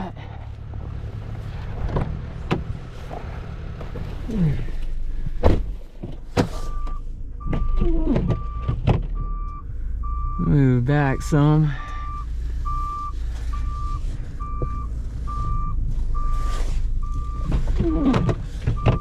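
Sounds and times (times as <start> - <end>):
truck idling: 0.0 - 19.0
reversing alarm beeping: 6.6 - 19.0
sharp knocks and clicks: 7.4 - 9.3.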